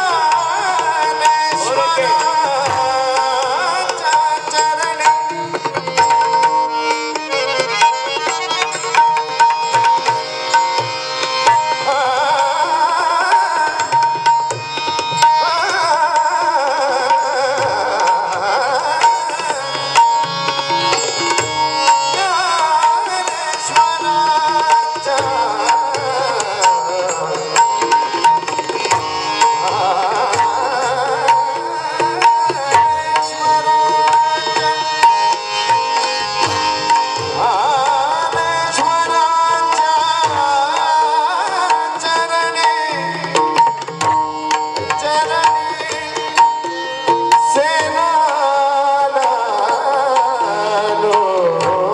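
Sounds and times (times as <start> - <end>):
person singing devotional song: 0.0 - 51.9
hand drum: 41.9 - 48.1.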